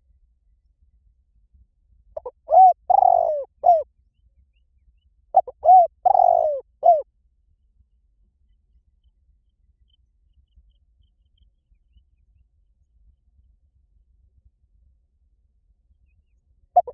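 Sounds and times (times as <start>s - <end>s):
dove cooing: 2.2s - 3.8s, 5.4s - 7.0s.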